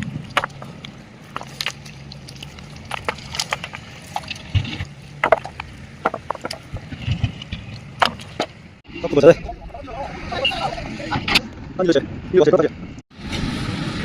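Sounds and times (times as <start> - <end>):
water splashing and dripping: 0.0 - 8.8
sharp clicks and knocks: 0.3 - 8.6.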